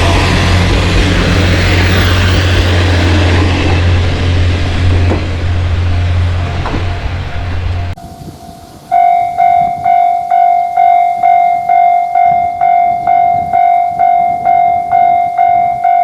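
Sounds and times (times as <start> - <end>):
low engine drone: 0.0 - 8.0
train rushing past: 0.0 - 9.9
faint knocks: 3.2 - 8.0.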